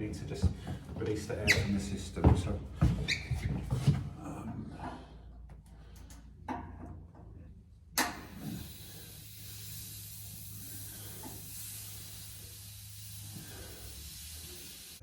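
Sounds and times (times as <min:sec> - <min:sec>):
pressurised air hissing: 0:08.1 - 0:15.0.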